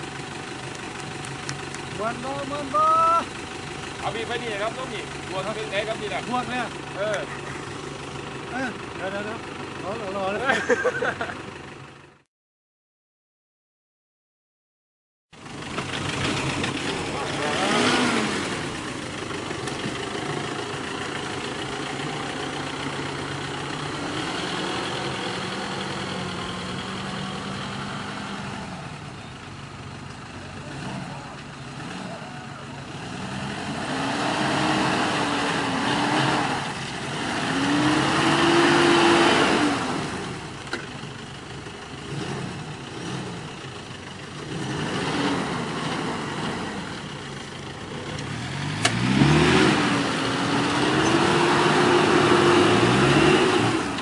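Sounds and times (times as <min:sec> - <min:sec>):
engine revving: 0:15.5 - 0:29.8, 0:30.5 - 0:40.9, 0:41.7 - 0:54.0.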